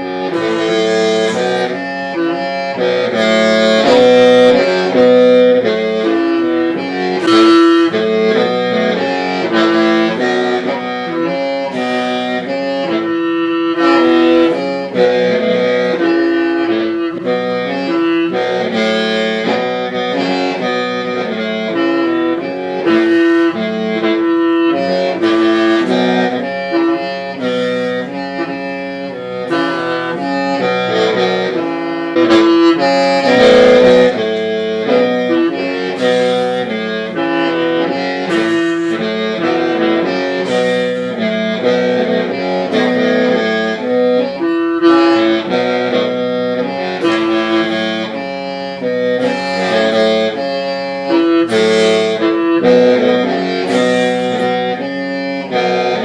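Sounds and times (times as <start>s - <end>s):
bamboo mouth organ melody: 0.0s - 56.0s.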